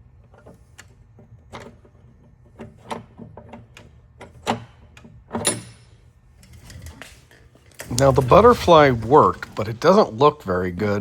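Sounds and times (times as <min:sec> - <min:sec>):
sharp mechanical clicks and knocks: 0:00.2 - 0:08.2.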